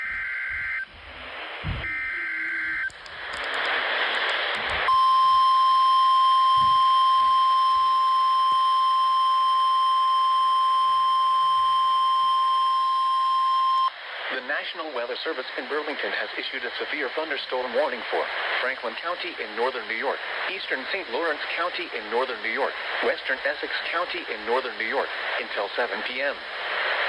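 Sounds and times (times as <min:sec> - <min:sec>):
radio static hiss: 0:02.6 - 0:04.9, 0:14.0 - 0:27.0.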